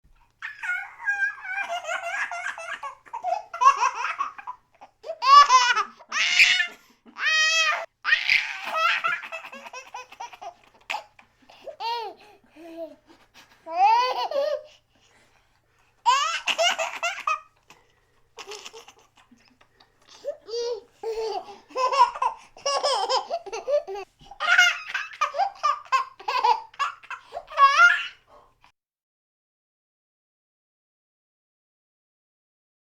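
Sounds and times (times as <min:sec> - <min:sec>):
baby laughing: 0:00.3 - 0:14.8, 0:16.0 - 0:17.7, 0:18.4 - 0:28.3.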